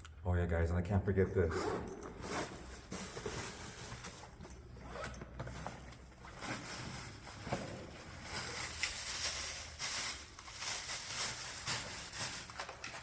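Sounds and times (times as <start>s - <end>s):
rustling of rummaged gear: 1.8s - 13.0s.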